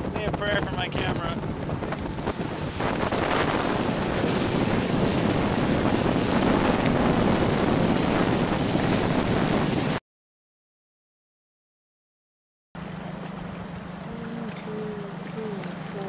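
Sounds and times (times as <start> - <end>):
rushing churning water: 0.0 - 10.0, 12.8 - 16.0
wind buffeting microphone: 0.0 - 10.0.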